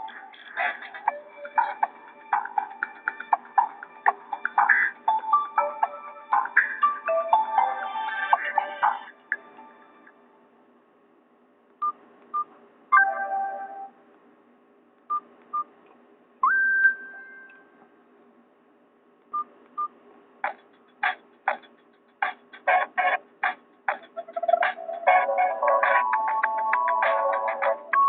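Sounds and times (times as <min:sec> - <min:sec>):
percussive ringtone rhythm: 0:00.0 - 0:09.6, 0:22.2 - 0:28.0
phone ringtone: 0:04.4 - 0:09.1, 0:24.2 - 0:28.0.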